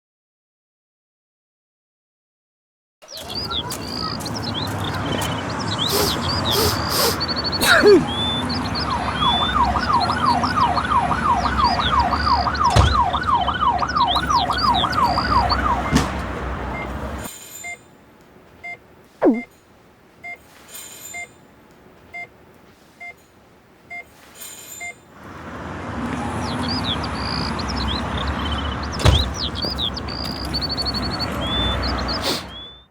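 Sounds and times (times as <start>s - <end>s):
birds chirping: 3.0s - 17.3s, 18.6s - 19.5s, 25.1s - 32.9s
street noise: 3.0s - 32.9s
police siren yelping: 5.0s - 17.3s
soft regular beeps: 6.5s - 16.0s, 18.6s - 25.0s.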